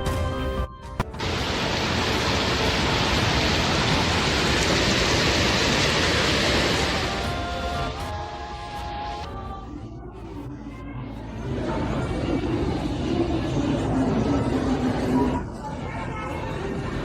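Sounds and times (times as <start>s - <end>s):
steady rushing noise: 1.2s - 8.2s.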